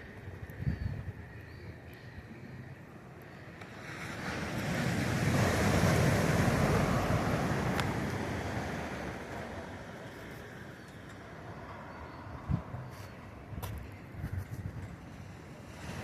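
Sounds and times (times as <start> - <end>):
ocean wave breaking on beach: 3.6 - 10.6, 15.2 - 16.0.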